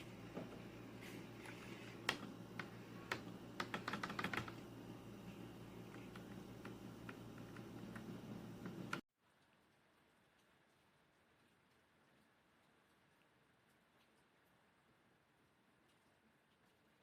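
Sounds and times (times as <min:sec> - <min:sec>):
mechanical keyboard typing: 0:03.1 - 0:04.7.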